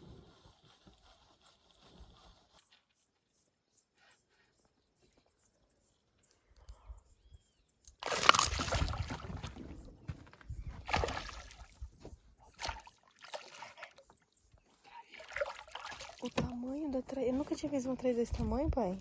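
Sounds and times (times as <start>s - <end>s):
water splashing beside a boat: 8.0s - 9.9s, 10.7s - 14.3s, 14.9s - 17.0s.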